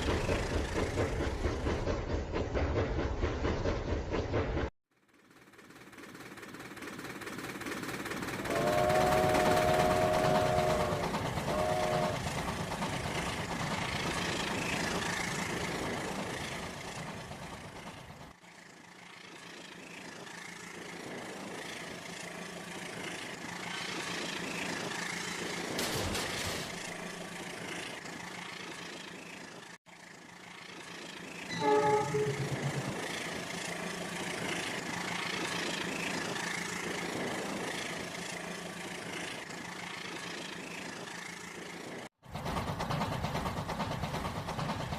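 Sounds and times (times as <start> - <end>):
toy train running on track: 0.0 - 2.3, 5.0 - 44.9
electronic horn: 31.5 - 33.0.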